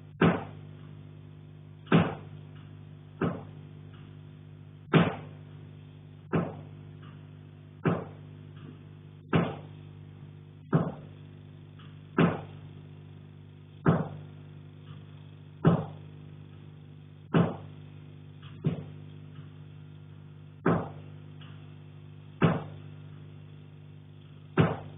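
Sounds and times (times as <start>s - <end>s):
steady low hum: 0.0s - 24.9s.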